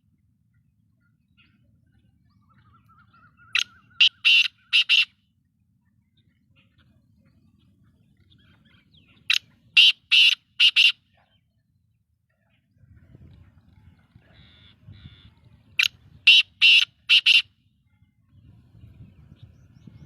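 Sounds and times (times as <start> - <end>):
bird rasping call: 2.6 - 5.2, 8.4 - 11.1, 14.3 - 17.5.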